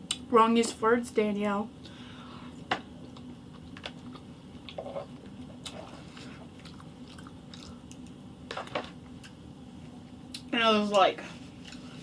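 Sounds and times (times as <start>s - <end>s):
person chewing food: 2.6s - 8.2s.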